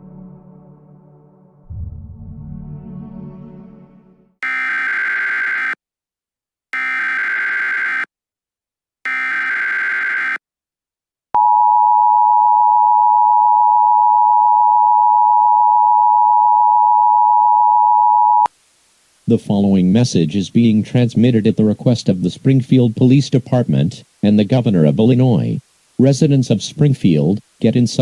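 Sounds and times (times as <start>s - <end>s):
raspy warbling data bursts: 4.4s - 5.8s, 6.8s - 8.1s, 9.1s - 10.4s
steady two-tone attention signal: 4.4s - 5.8s, 9.1s - 10.4s.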